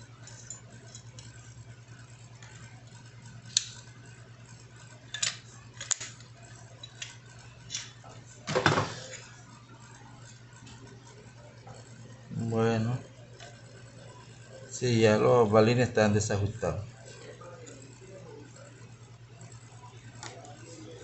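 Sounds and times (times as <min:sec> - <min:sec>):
steady low hum: 0:00.0 - 0:21.0
metal parts clinking: 0:05.1 - 0:06.2.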